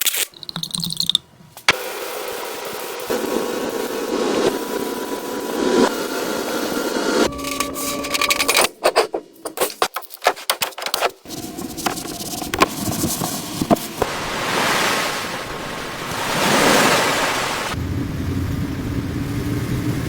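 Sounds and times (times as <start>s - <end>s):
rapid clicks and knocks: 8.2s - 14.0s.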